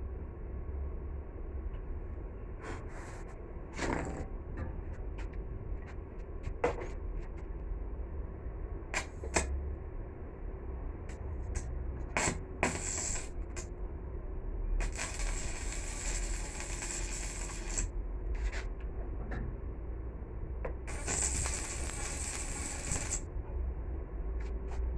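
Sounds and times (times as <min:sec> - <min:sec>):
low background hum: 0:00.0 - 0:24.9
steady hiss: 0:12.6 - 0:13.6, 0:14.8 - 0:17.9, 0:20.9 - 0:23.2.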